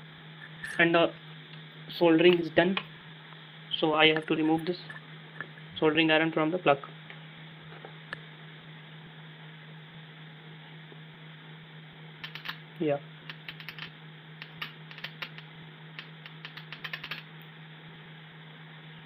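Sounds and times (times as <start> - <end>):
steady low hum: 0.0 - 19.0
quick light clicks and taps: 12.2 - 12.6, 13.3 - 17.2.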